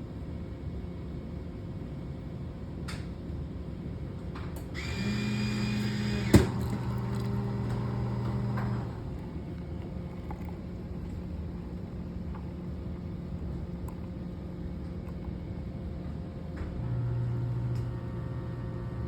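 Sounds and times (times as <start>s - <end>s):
coffee machine humming: 4.6s - 19.0s.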